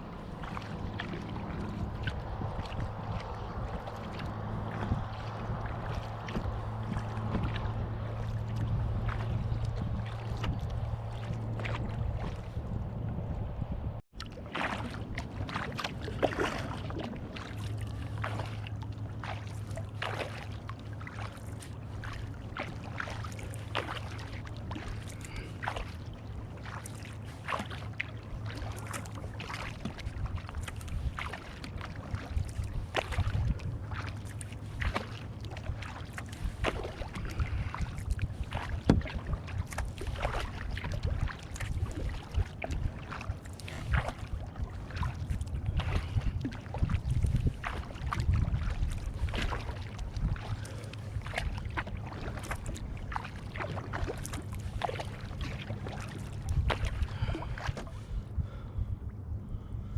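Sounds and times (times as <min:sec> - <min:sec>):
water trickling off paddle: 0:00.0 - 0:13.2, 0:14.2 - 0:58.6
paddle splashing in water: 0:00.0 - 0:13.5, 0:14.1 - 0:58.6.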